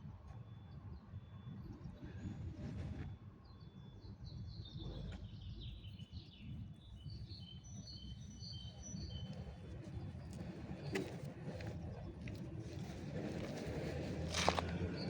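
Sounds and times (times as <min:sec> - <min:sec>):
small birds chirping: 0:04.3 - 0:15.0.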